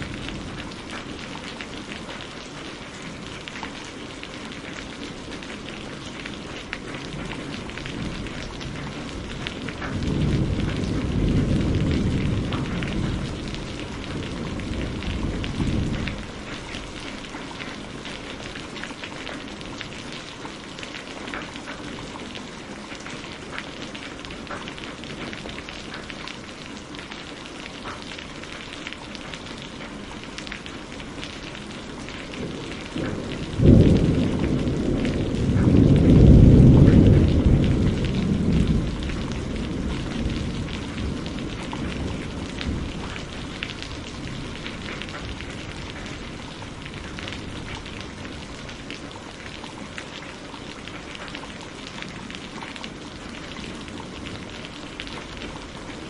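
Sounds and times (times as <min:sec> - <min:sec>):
thunder crack and rumble: 0:00.0 - 0:02.2, 0:05.6 - 0:20.1, 0:31.5 - 0:55.9
steady rain falling: 0:00.0 - 0:56.0.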